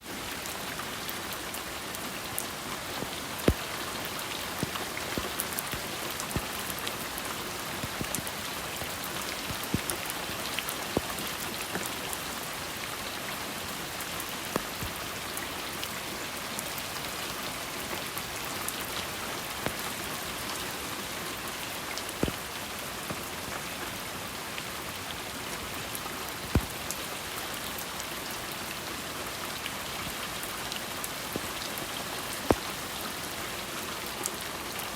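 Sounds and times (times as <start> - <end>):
steady rain falling: 0.0 - 34.9
drops tapping close by: 7.8 - 10.3.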